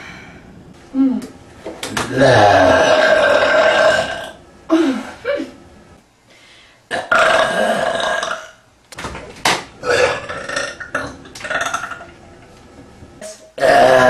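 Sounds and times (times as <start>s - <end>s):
woman burping: 2.1s - 5.5s, 6.9s - 8.6s, 9.8s - 12.0s, 13.2s - 14.0s.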